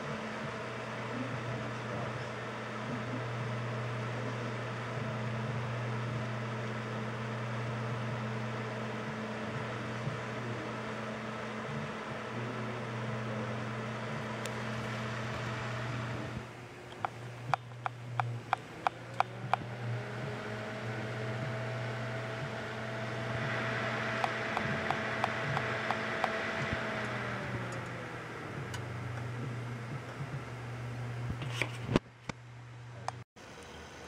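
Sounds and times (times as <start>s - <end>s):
computer fans humming: 0.0s - 34.0s
steady whine: 0.0s - 34.0s
sharp clicks: 16.9s - 19.8s, 24.1s - 28.0s.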